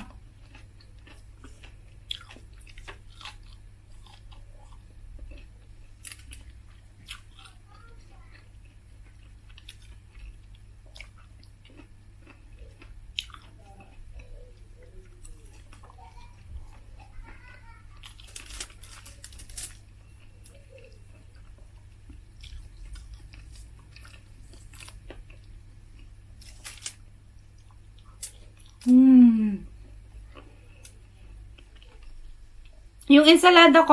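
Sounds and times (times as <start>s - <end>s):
person chewing: 0.0s - 33.1s
crunching crispy chicken skin: 0.4s - 8.4s, 15.2s - 29.0s.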